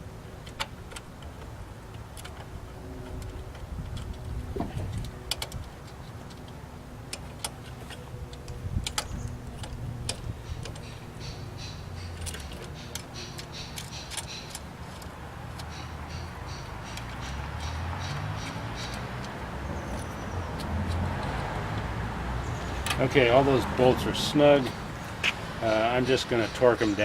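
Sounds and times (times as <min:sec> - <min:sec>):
wrench clicking on bolts: 0:05.0 - 0:21.9.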